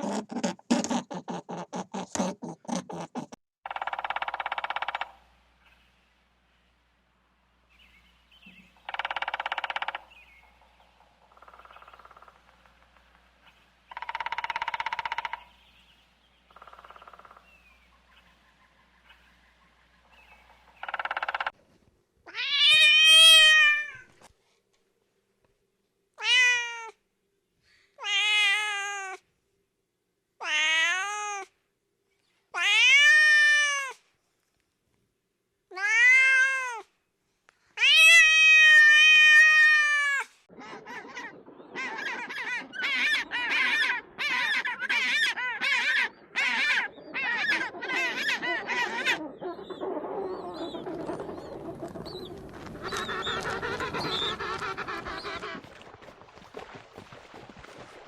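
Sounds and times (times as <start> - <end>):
cat meowing: 35.7 - 36.9.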